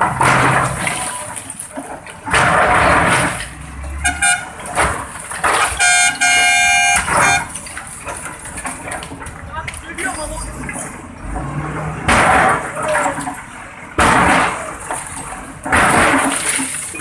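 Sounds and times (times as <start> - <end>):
vehicle horn: 4.0 - 4.6, 5.6 - 7.5.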